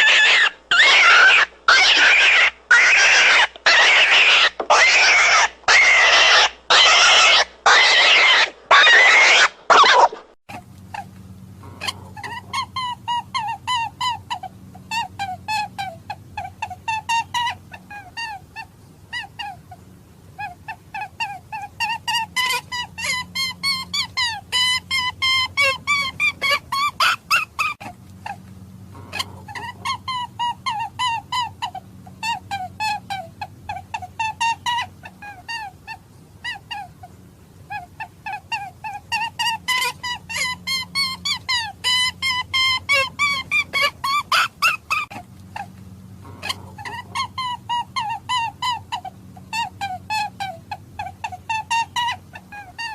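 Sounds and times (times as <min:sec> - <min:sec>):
hare calling: 0:00.0 - 0:10.3.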